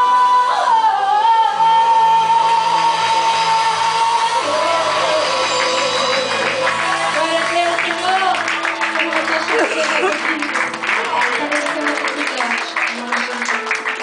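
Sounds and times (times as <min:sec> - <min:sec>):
guitar accompaniment: 0:00.0 - 0:14.0
worship singing: 0:00.0 - 0:14.0.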